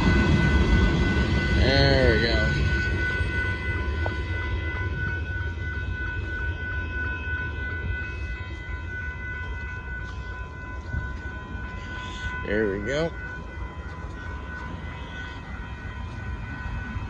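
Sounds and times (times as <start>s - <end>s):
freight cars rumbling past: 0.0s - 6.0s
steady high tones: 0.0s - 17.0s.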